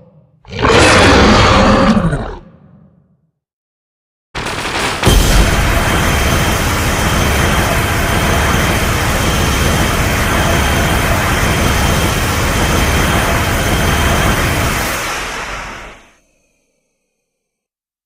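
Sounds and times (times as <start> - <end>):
jet-like rushing monster roar: 0.0 - 2.4, 5.0 - 16.2.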